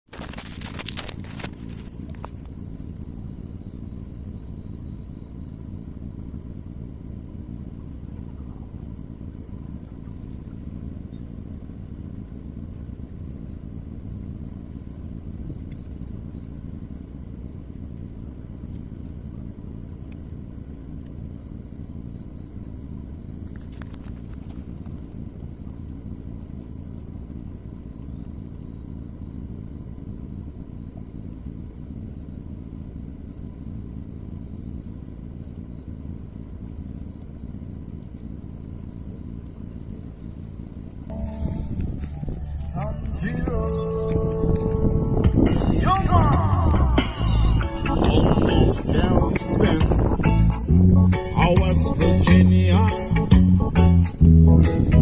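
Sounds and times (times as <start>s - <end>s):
insect trilling: 0.1s - 55.0s
low rumble: 41.0s - 55.0s.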